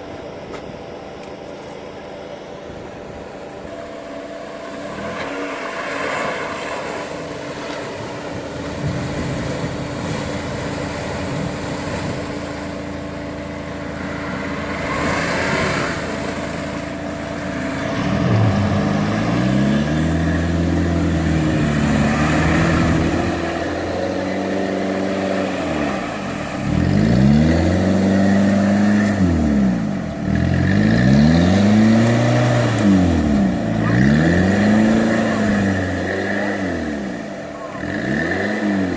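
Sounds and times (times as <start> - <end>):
engine revving: 4.5 - 38.9.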